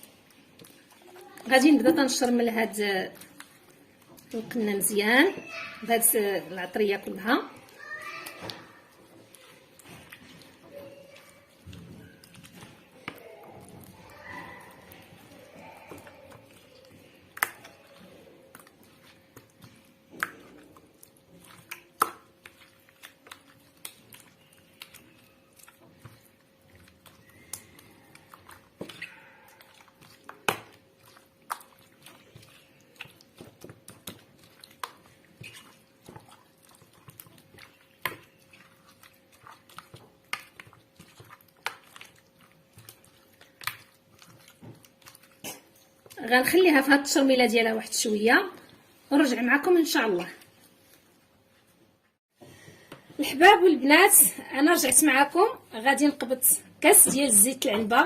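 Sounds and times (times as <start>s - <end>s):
squelching of meat in marinade: 0.0s - 51.7s.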